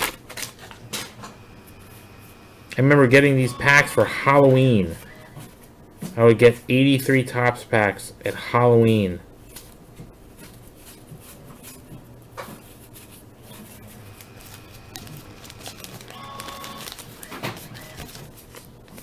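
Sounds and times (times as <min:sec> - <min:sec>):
faint steady hum: 0:00.0 - 0:19.0
cards being flipped through: 0:10.4 - 0:19.0.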